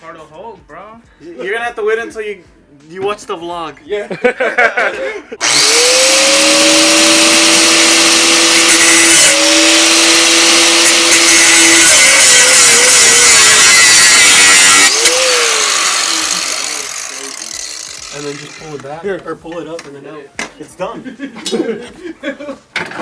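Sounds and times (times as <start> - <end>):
power tool motor running: 5.4 - 18.8.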